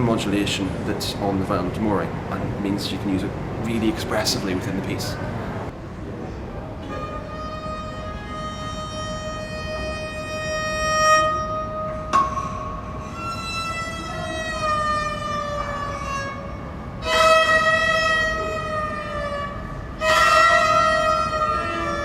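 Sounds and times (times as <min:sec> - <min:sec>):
viola bowing sustained notes: 0:06.8 - 0:22.0.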